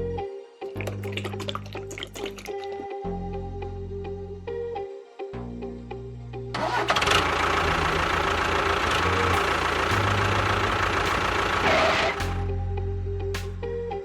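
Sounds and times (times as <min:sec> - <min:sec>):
background music: 0:00.0 - 0:14.0
small motor running: 0:06.6 - 0:12.5.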